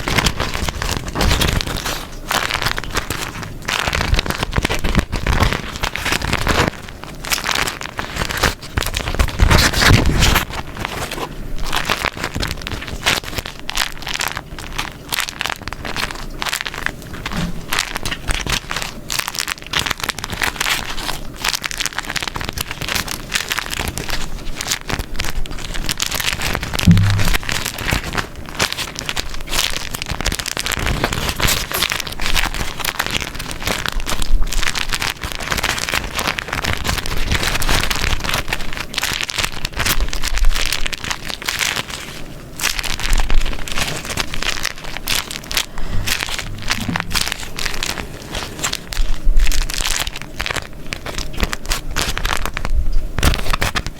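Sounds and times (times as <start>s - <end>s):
wax wrap crinkling: 0.0s - 53.9s.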